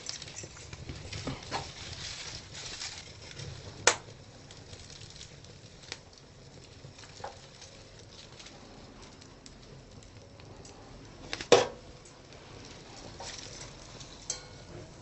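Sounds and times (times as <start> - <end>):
dried leaves crackling in fire: 0.0 - 15.0.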